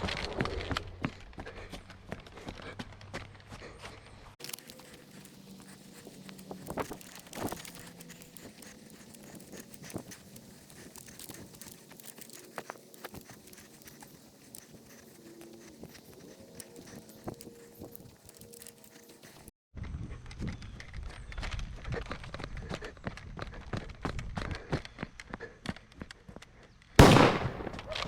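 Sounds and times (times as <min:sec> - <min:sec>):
rustling: 0:04.4 - 0:19.5.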